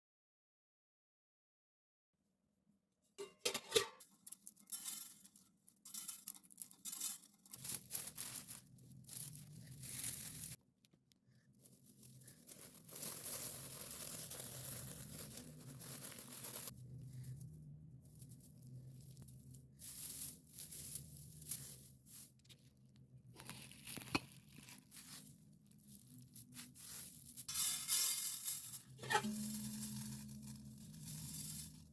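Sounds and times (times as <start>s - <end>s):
dry plants rustling and crackling: 4.0s - 10.6s, 11.3s - 31.9s
low steady hum: 7.6s - 27.4s, 28.3s - 31.9s.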